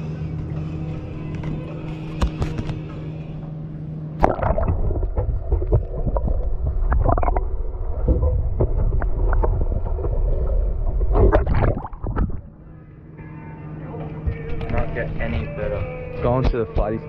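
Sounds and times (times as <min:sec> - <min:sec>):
low rumble: 0:00.0 - 0:13.2
steady low hum: 0:00.0 - 0:17.0.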